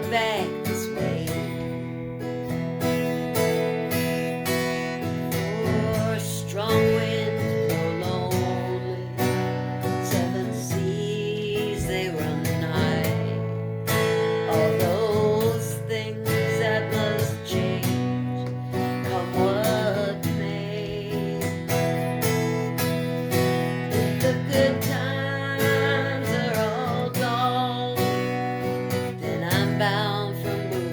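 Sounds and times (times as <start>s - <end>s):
acoustic guitar strumming chords: 0.0s - 30.9s.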